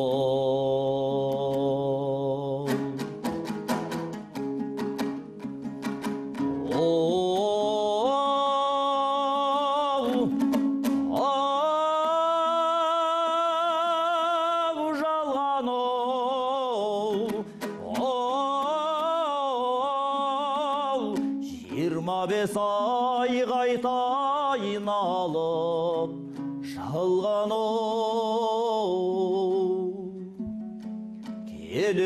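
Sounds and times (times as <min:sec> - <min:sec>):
plucked string accompaniment: 0:00.0 - 0:32.0
person singing long wavering notes: 0:06.5 - 0:30.4.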